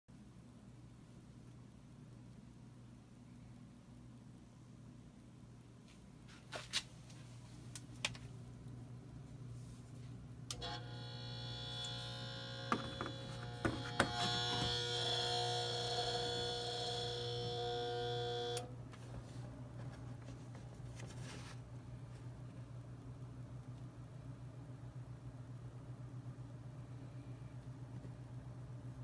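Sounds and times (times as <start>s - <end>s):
low hum: 8.4s - 29.0s
refrigerator compressor buzzing: 10.5s - 18.8s.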